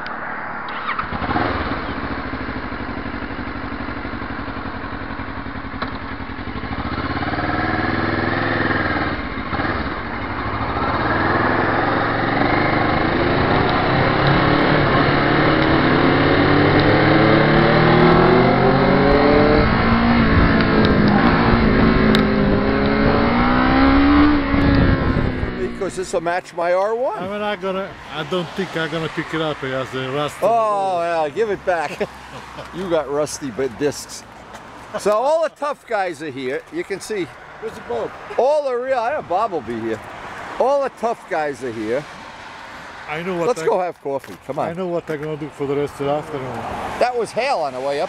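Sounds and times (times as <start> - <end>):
motorcycle engine revving: 0.4 - 26.4.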